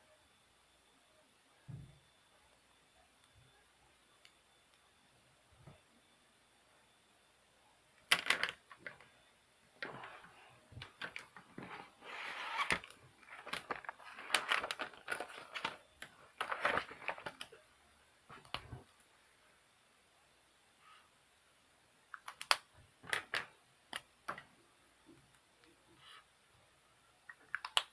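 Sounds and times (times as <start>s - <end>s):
small clicks and rustling scrapes: 9.8s - 17.6s.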